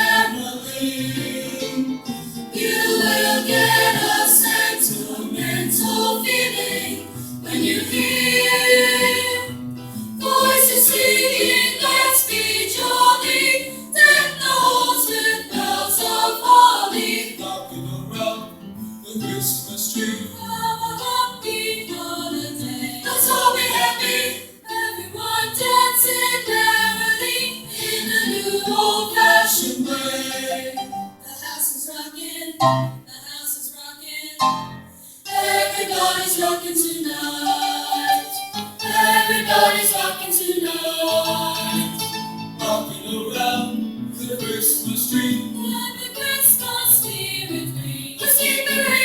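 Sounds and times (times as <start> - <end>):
musical accompaniment: 0.0 - 31.3, 32.6 - 33.1, 34.4 - 46.6
choir singing upbeat song: 0.0 - 49.0.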